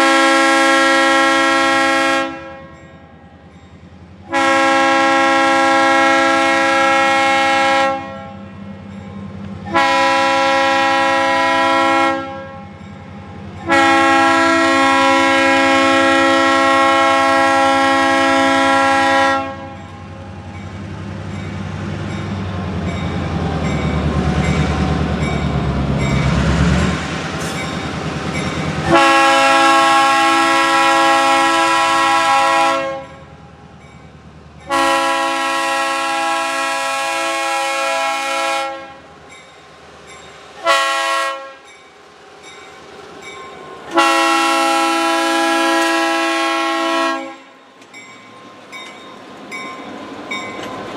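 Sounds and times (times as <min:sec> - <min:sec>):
locomotive air horn blasts: 0:00.0 - 0:02.8, 0:04.3 - 0:08.5, 0:09.7 - 0:12.8, 0:13.6 - 0:20.0, 0:28.8 - 0:33.2, 0:34.7 - 0:39.1, 0:40.6 - 0:41.7, 0:43.9 - 0:47.6
diesel train rumble: 0:00.0 - 0:50.9.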